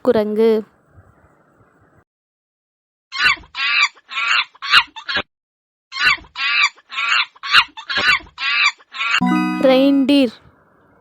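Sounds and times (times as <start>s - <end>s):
baboon calls: 3.2s - 5.2s, 6.0s - 9.2s.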